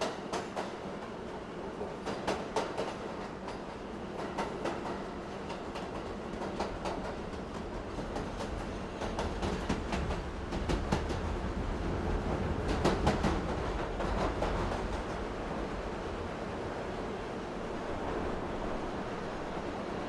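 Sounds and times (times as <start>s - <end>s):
subway wheels rumbling on track: 0.0s - 20.0s
train clacks and rattles: 0.0s - 20.0s.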